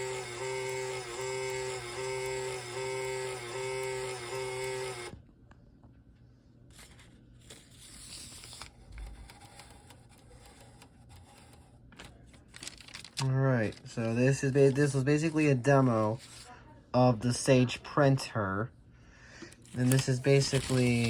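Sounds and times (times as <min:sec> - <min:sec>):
printer buzzing: 0:00.0 - 0:05.2, 0:19.6 - 0:21.0
faint clicks and rustles: 0:06.8 - 0:14.0.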